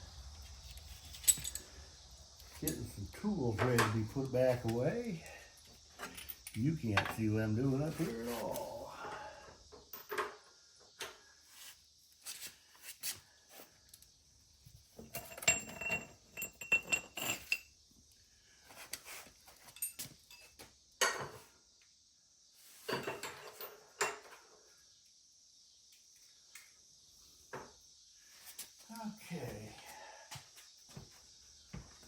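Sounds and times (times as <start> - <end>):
metal hand tools clinking: 1.0 - 1.7.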